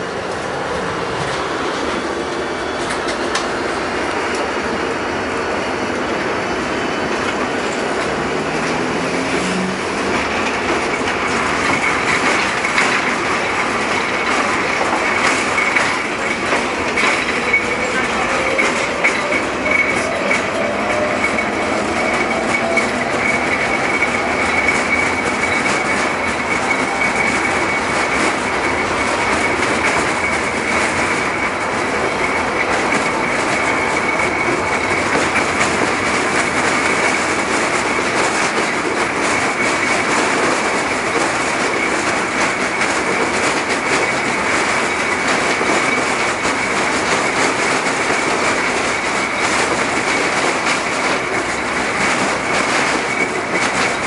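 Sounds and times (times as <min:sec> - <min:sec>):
tram wheel rumble on rails: 0:00.0 - 0:54.0
high-pitched wheel squeal: 0:05.5 - 0:38.3.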